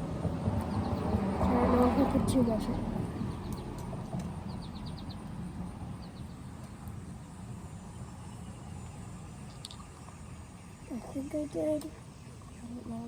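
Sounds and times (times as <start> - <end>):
steady low rumble: 0.0 - 13.0
small bird chirping: 0.6 - 7.3.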